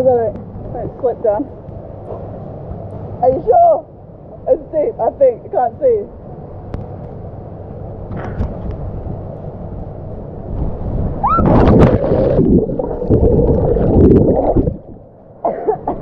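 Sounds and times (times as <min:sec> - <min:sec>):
water splashing and churning: 0:11.3 - 0:15.2.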